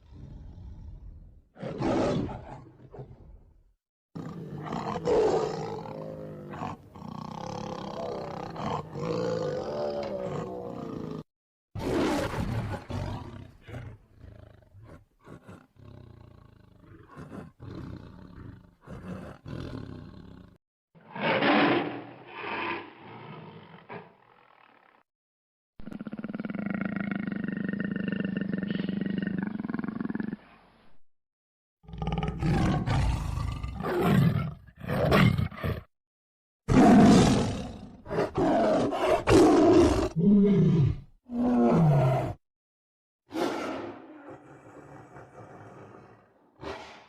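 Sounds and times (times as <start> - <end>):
tiger roaring: 0.0 - 3.2, 4.2 - 11.2, 11.8 - 24.9, 31.9 - 35.9, 36.7 - 42.4, 43.3 - 47.0
tiger growling: 4.2 - 11.2, 11.8 - 25.0, 31.9 - 35.9, 36.7 - 42.4, 43.3 - 47.0.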